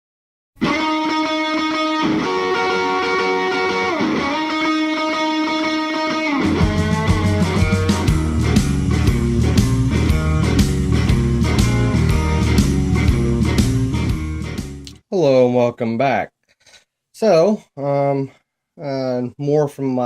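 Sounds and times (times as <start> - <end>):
electric guitar held notes: 0.6 - 15.0
bass and drums beat: 6.3 - 15.0.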